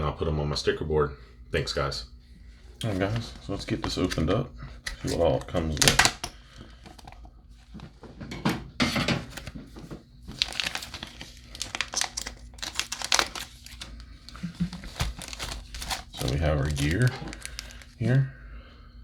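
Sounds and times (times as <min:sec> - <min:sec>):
packaging crinkling and tearing: 0:02.8 - 0:07.8, 0:08.8 - 0:18.1.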